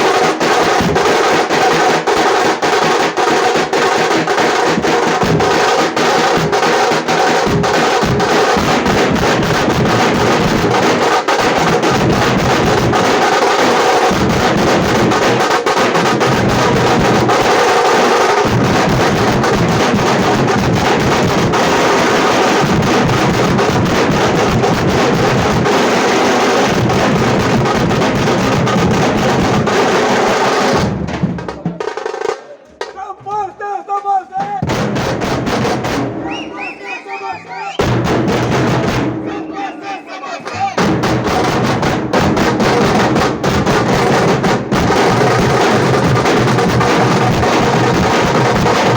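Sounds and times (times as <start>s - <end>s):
frame drum beaten with sticks: 0.0s - 48.9s.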